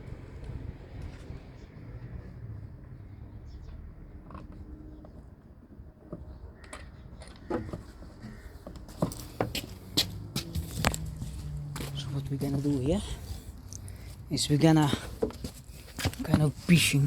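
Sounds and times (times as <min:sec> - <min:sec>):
clicks and knocks of parts: 0:06.1 - 0:09.6.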